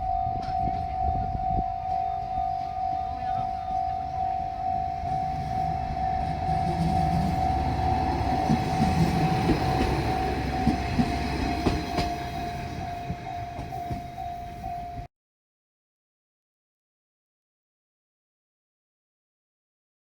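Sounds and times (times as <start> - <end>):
diesel train rumbling past: 0.0 - 15.1
level crossing bell ringing: 0.0 - 15.1
wheels clicking over rail joints: 0.1 - 15.1.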